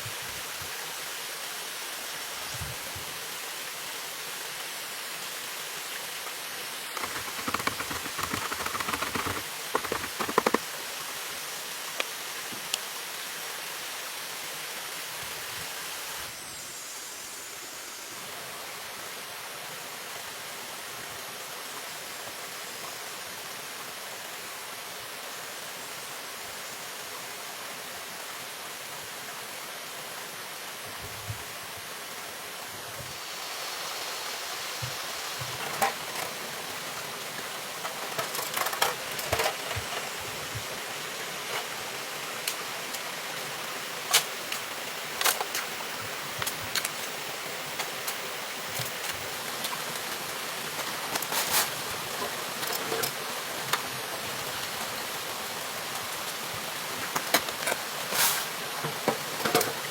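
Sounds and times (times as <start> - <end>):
flowing water rushing: 0.0 - 59.9.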